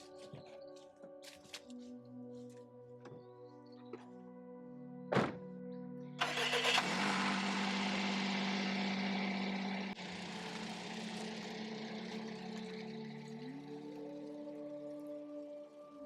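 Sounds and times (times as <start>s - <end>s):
background music: 0.0s - 16.0s
van engine cranking and idling: 6.2s - 15.0s.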